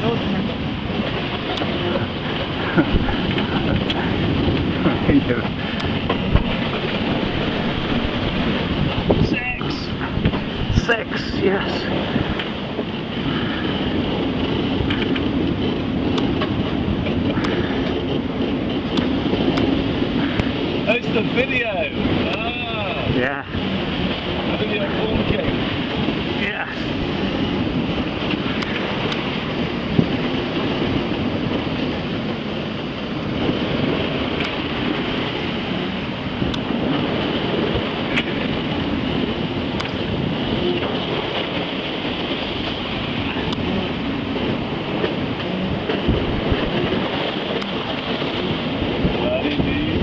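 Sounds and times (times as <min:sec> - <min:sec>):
sea rushing past hull: 0:00.0 - 0:50.0
strong wind buffeting microphone: 0:00.0 - 0:50.0
faint clicks: 0:39.8 - 0:40.0.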